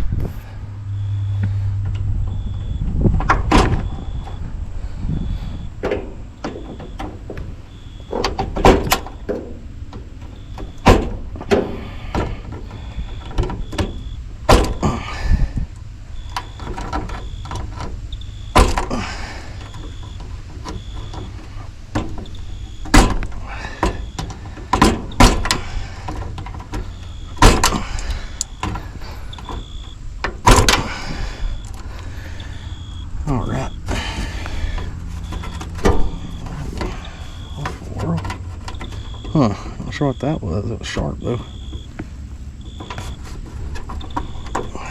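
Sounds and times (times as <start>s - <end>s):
low rumble: 0.0s - 8.1s.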